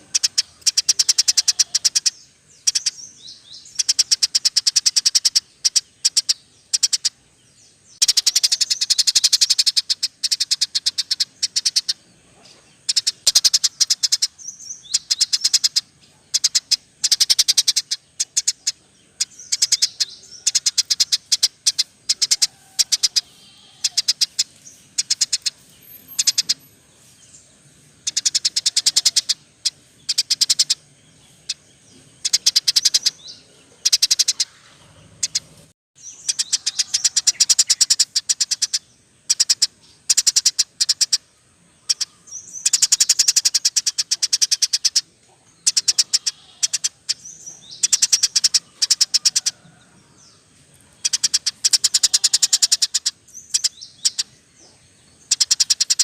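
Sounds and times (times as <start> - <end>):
songbirds chirping in trills: 0.0 - 56.0.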